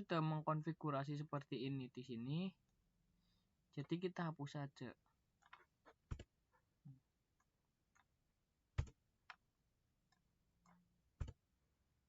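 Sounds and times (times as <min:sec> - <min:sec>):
computer mouse clicks: 0:05.4 - 0:06.3.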